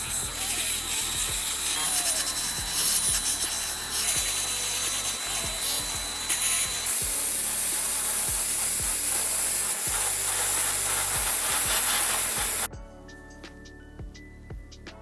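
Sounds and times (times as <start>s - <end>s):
workshop tool hissing: 0.0s - 12.7s
background music with steady beat: 0.0s - 15.0s.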